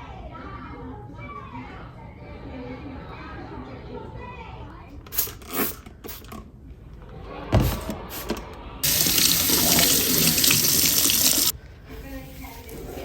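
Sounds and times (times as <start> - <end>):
water running into a sink: 8.8 - 11.5.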